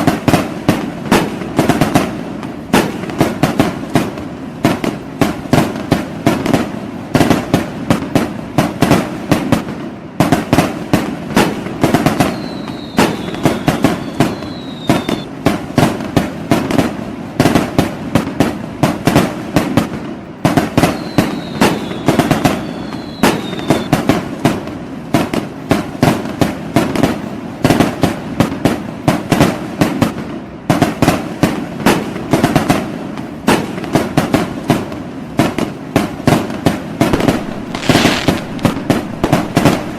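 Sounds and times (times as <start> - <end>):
fireworks bangs and crackles: 0.0 - 39.9
falling firework whistles: 11.4 - 15.4, 20.5 - 24.2, 37.0 - 39.9.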